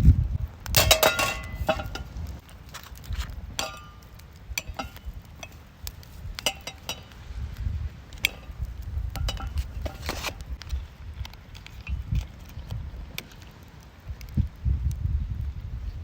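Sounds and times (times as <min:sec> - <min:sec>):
wind rumble on microphone: 0:00.0 - 0:16.0
camping gear clinking: 0:00.8 - 0:07.4, 0:08.0 - 0:10.8.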